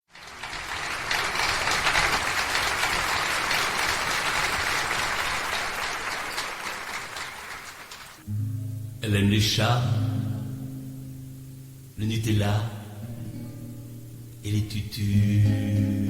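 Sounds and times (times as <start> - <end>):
audience clapping: 0.0 - 8.2.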